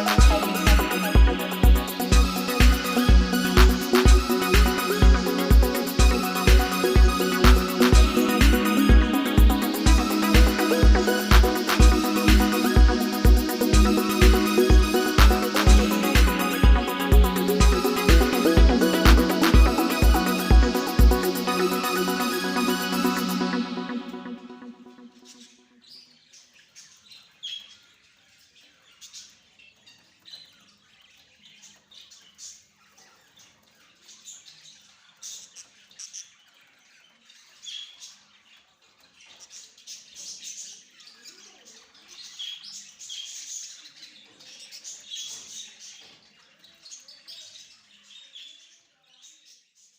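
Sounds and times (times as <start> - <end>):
budgerigar chicks chirping: 28.4 - 48.6.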